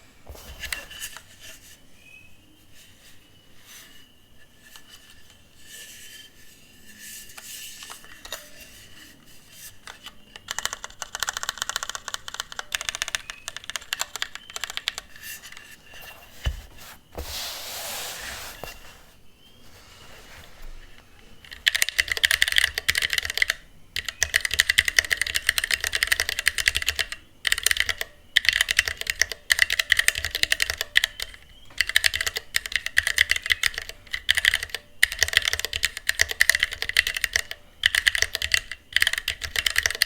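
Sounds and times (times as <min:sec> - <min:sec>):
short rubbing noise: 0:00.2 - 0:01.2, 0:15.8 - 0:21.5
mechanical keyboard typing: 0:09.8 - 0:15.7, 0:21.4 - 0:40.0.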